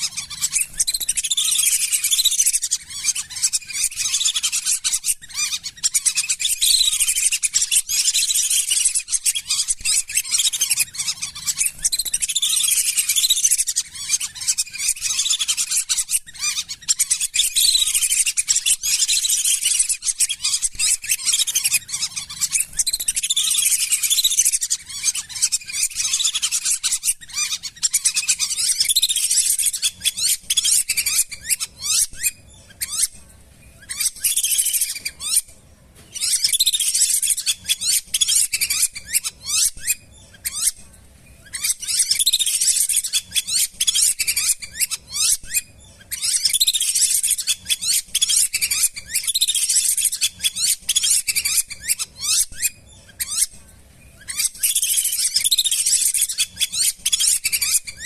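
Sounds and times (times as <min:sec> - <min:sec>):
ducks whistling calls: 0:00.0 - 0:33.2, 0:33.8 - 0:35.5, 0:41.4 - 0:53.5, 0:54.2 - 0:58.0.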